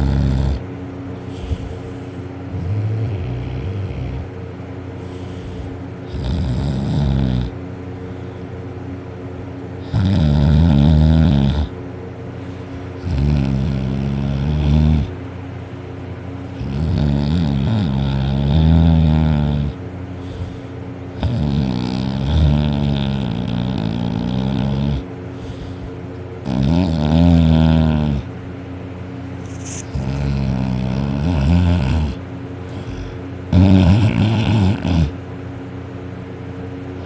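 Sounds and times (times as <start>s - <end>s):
person snoring loudly: 0.0s - 0.6s, 2.5s - 4.3s, 6.1s - 7.6s, 9.8s - 11.7s, 13.0s - 15.1s, 16.6s - 19.8s, 21.2s - 25.1s, 26.4s - 28.3s, 29.6s - 35.2s
quiet breaths: 1.1s - 2.4s, 4.9s - 5.9s, 20.1s - 20.9s, 25.3s - 26.1s.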